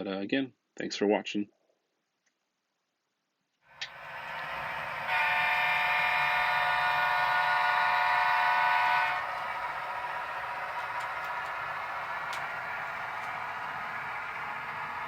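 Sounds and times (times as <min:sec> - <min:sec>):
train horn chord: 0:03.8 - 0:15.0.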